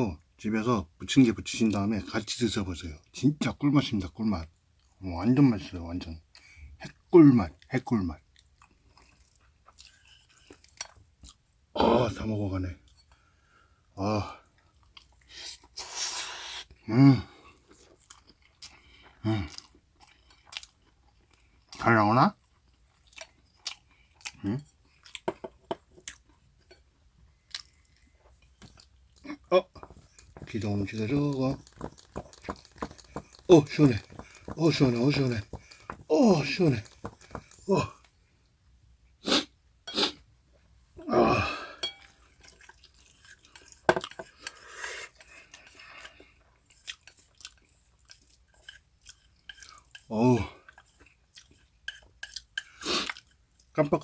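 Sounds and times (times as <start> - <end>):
chewing with mouth clicks: 8.3 - 11.4, 17.5 - 37.7, 41.9 - 53.7
noodle slurp: 29.8 - 38.0.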